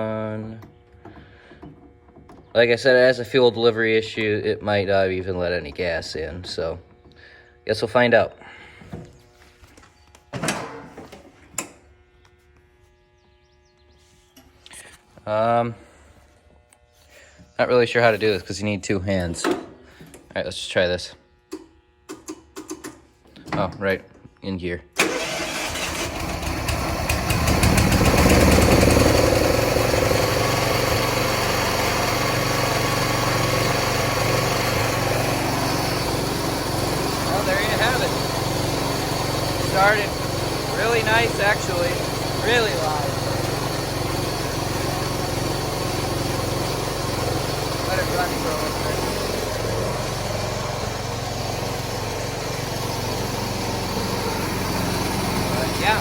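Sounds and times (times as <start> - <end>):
tractor engine starting and running: 0.0 - 7.1, 25.0 - 56.0.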